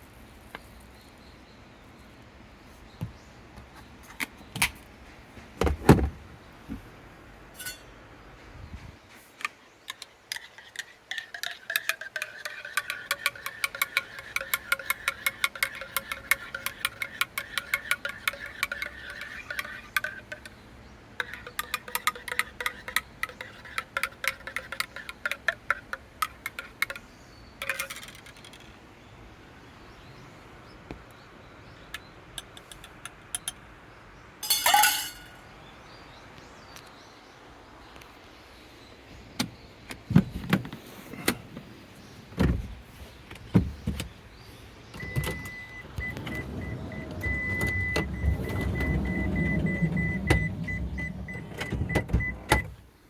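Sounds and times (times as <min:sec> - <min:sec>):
spoon clinking in a cup: 0:07.6 - 0:07.9, 0:10.0 - 0:20.6, 0:21.2 - 0:27.0, 0:27.6 - 0:28.4, 0:34.4 - 0:35.4.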